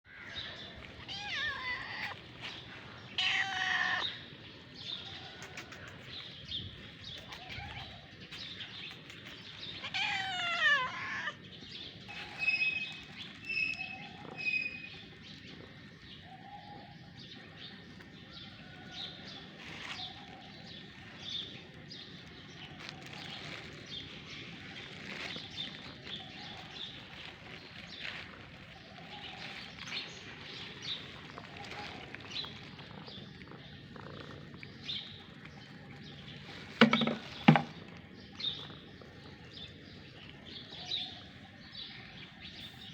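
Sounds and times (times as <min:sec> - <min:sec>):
cat meowing: 0:01.0 - 0:02.2, 0:03.1 - 0:04.2, 0:09.8 - 0:11.4.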